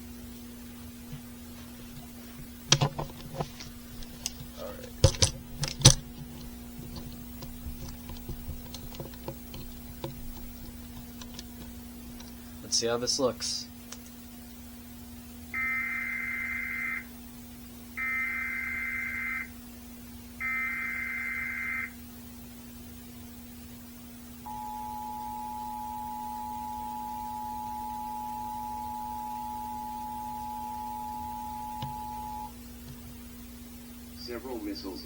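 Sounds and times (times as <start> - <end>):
steady low hum: 0.0 - 14.5, 24.4 - 35.0.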